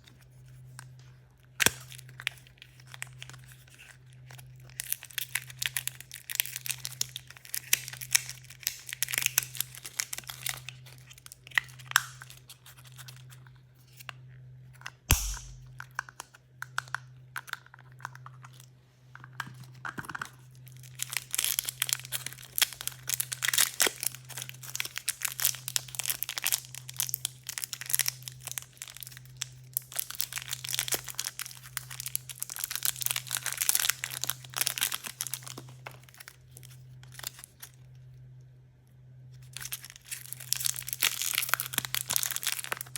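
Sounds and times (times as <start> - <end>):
low electrical hum: 0.0 - 42.9
plastic wrappers crinkling: 1.4 - 13.5, 19.3 - 37.8, 39.4 - 42.9.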